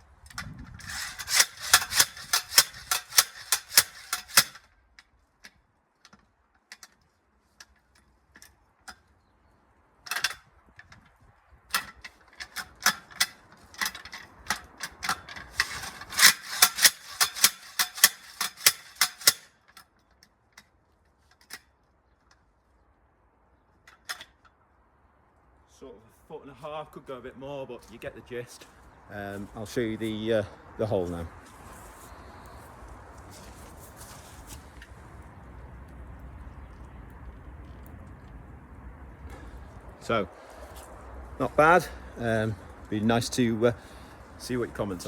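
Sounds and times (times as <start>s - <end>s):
post hole digger clacking: 0.0s - 4.7s, 10.1s - 11.0s, 11.7s - 20.2s.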